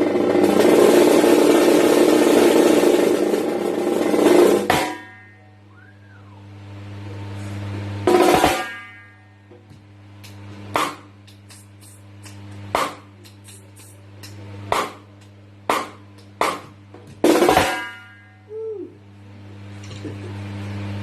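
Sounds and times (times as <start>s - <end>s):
low hum: 0.1s - 21.0s
snare drum cracks: 4.3s - 5.1s, 8.1s - 8.9s, 9.6s - 18.1s.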